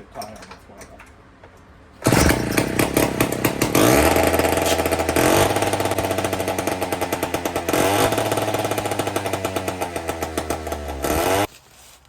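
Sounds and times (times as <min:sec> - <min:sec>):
chainsaw engine revving: 0:02.0 - 0:11.5.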